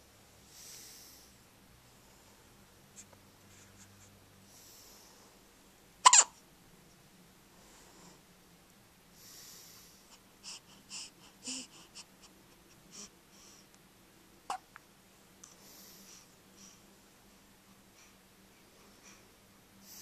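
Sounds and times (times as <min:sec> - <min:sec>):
loud hiccups: 0:06.0 - 0:06.4.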